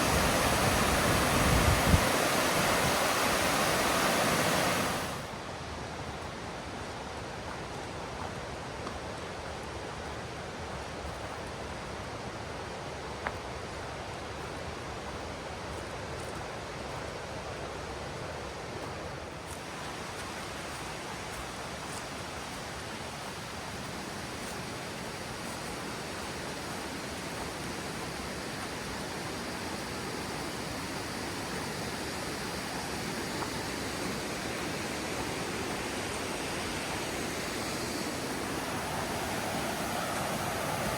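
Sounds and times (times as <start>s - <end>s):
waterfall rushing: 0.0s - 5.5s, 19.6s - 40.9s.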